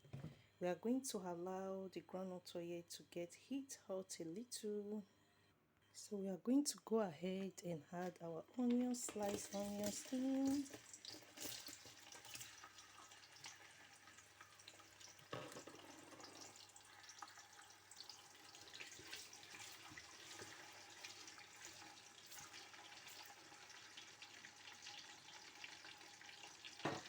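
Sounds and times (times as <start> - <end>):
onions sizzling in oil: 9.3 - 27.0.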